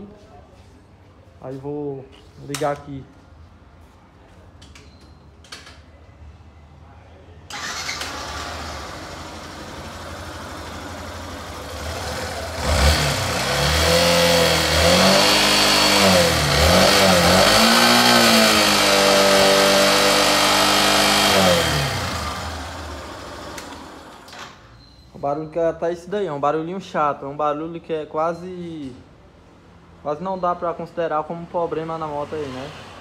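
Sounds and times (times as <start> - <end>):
motorcycle engine idling and revving: 7.6 - 24.3.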